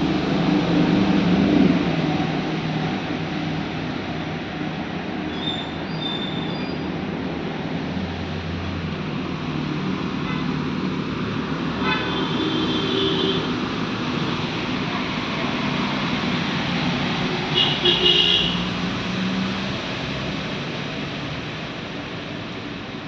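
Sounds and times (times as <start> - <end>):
road traffic noise: 0.0 - 23.0
vehicle horn: 17.5 - 18.6.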